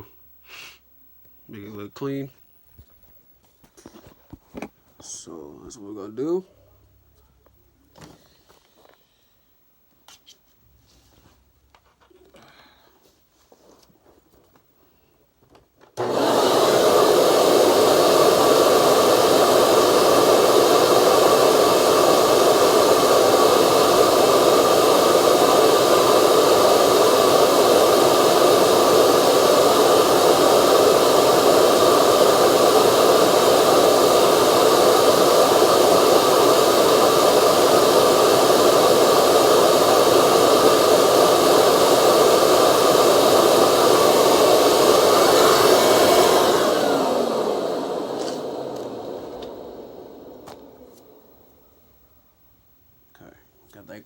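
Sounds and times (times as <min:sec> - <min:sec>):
vacuum cleaner motor running: 0:16.0 - 0:51.6.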